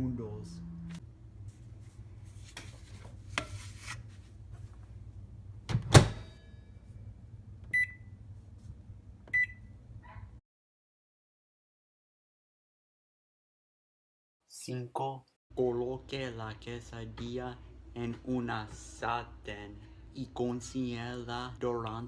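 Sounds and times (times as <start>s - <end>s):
microwave oven humming: 0.0s - 2.4s, 4.1s - 10.3s.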